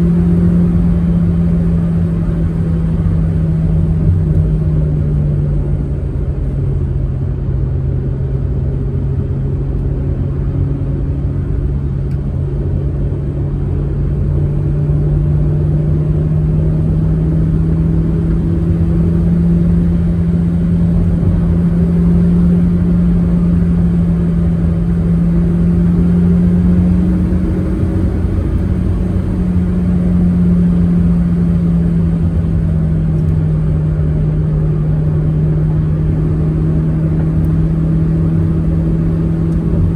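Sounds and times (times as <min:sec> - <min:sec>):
car engine drone: 0:00.0 - 0:39.9
low road rumble: 0:00.0 - 0:39.9.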